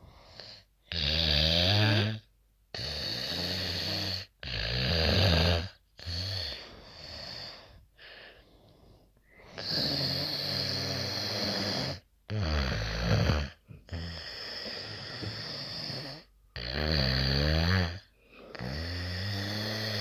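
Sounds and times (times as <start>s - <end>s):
person snoring loudly: 0.9s - 2.2s, 2.8s - 7.6s, 9.5s - 20.0s.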